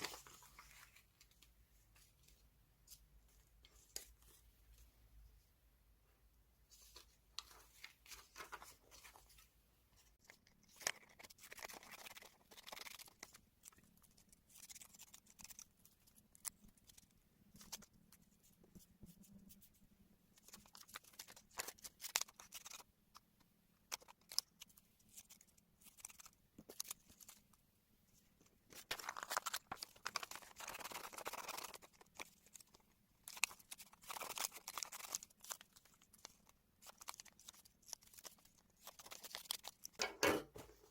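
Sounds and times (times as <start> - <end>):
paper rustling: 0.0 - 4.8, 6.7 - 15.6, 28.7 - 40.9.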